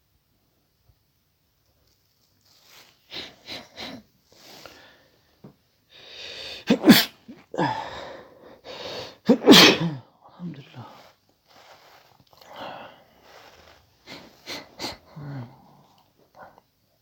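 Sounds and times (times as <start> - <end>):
person's breathy sneeze-like outbursts: 3.0 - 4.9, 6.1 - 10.1, 12.4 - 15.8.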